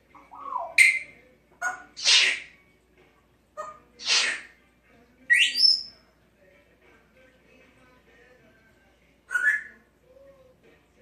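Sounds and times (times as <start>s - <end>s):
parrot sneezing: 2.0s - 2.5s, 4.0s - 4.5s.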